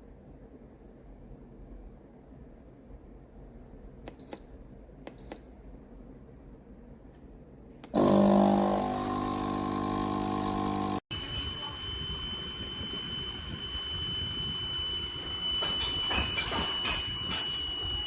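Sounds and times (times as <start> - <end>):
coffee machine beep: 4.2 - 5.5, 8.0 - 18.0
coffee machine pump humming: 7.9 - 16.6
thin high whine: 8.0 - 18.0.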